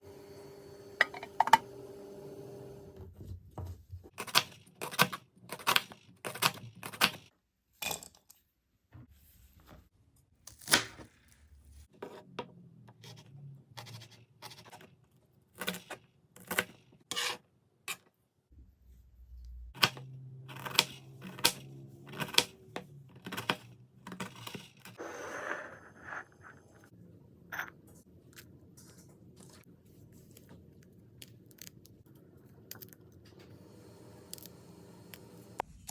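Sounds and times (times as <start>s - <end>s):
utensils and dishes clinking: 1.0s - 1.7s.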